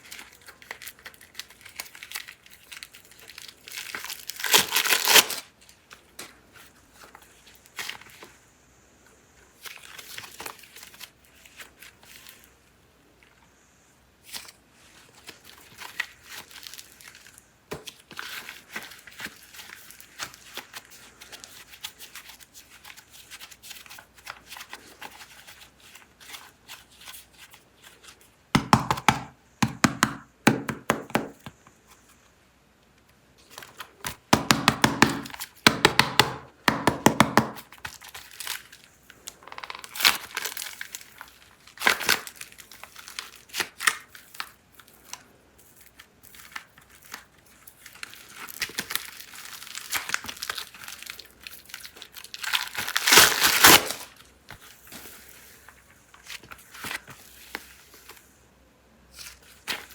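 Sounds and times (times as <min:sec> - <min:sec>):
plastic packaging crinkling and tearing: 0:00.0 - 0:08.4, 0:09.6 - 0:12.6, 0:14.2 - 0:28.3, 0:37.5 - 0:58.3, 0:59.1 - 0:59.9.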